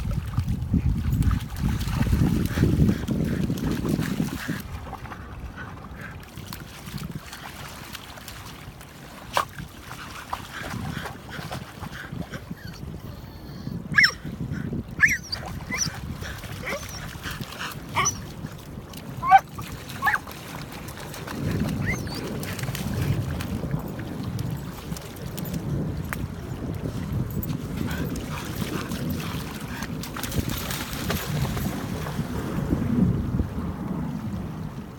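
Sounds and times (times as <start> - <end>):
low rumble of wind or water: 0.0 - 34.9
dog whining and yipping: 12.6 - 14.3, 15.0 - 17.1, 17.9 - 18.3, 19.2 - 20.2, 21.8 - 22.3.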